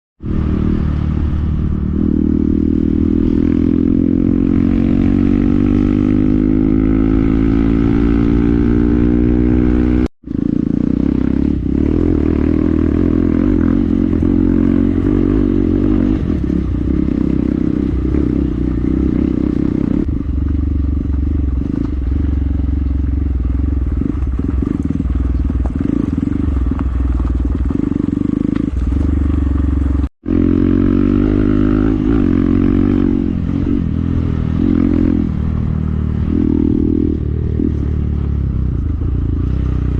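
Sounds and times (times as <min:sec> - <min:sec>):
motorcycle engine accelerating: 0:00.2 - 0:39.9.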